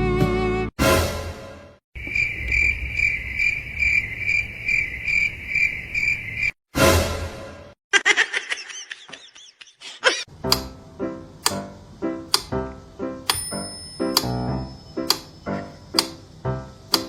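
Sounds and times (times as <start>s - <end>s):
cricket chirping: 2.0s - 6.6s.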